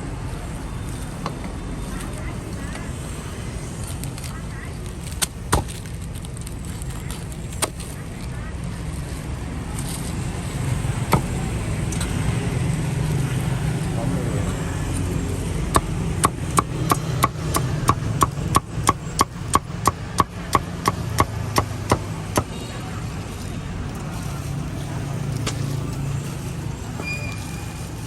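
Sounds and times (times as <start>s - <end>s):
street traffic rumbling: 0.0s - 28.0s
cleaver chopping on wooden board: 11.1s - 11.4s, 15.7s - 22.5s.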